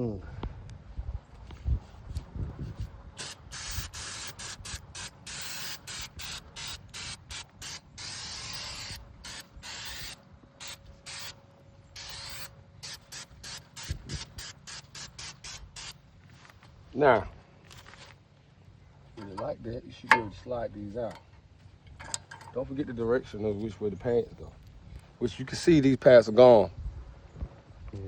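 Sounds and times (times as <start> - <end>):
aerosol spray hissing: 3.2 - 11.4, 12.0 - 16.0.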